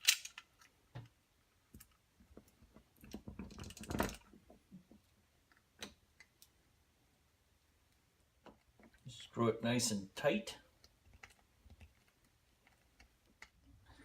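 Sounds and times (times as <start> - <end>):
small metal parts clicking: 0.0 - 0.7.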